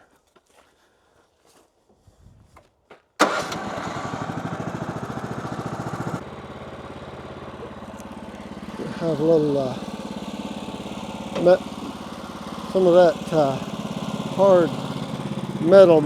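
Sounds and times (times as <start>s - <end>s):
engine starting and idling: 3.2s - 16.0s.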